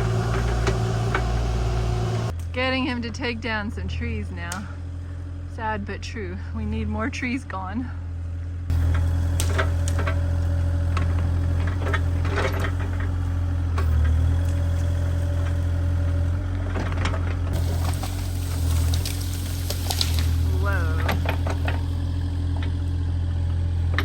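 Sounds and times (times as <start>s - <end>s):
excavator diesel engine: 0.0s - 24.0s
wood cracking and snapping: 8.7s - 22.9s.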